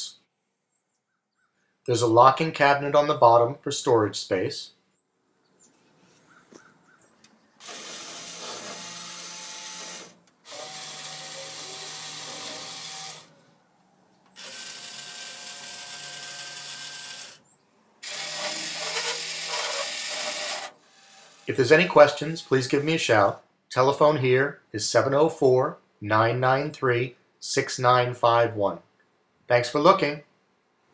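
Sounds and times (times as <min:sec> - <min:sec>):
vending machine motor whirring: 0:07.6 - 0:13.6, 0:14.2 - 0:23.4.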